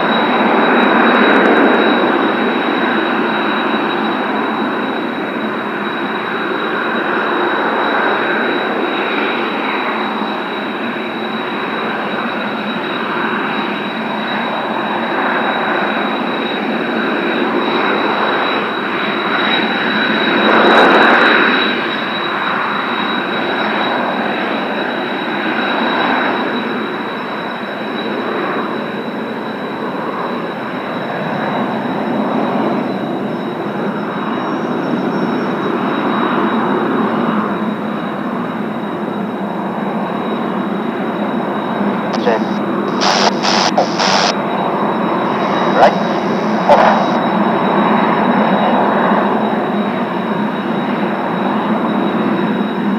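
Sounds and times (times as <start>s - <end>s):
jet engines rushing and whining: 0.0s - 52.9s.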